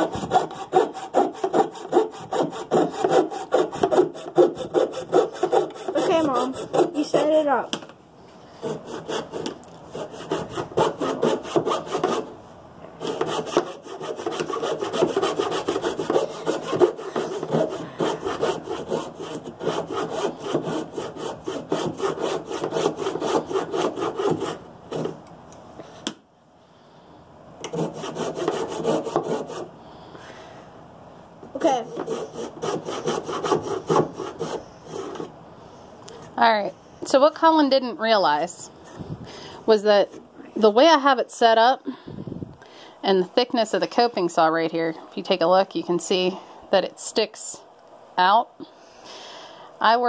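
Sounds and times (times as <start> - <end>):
saw cutting wood: 0.0 - 7.6, 8.6 - 12.3, 13.0 - 25.2, 27.6 - 29.7, 31.6 - 35.3.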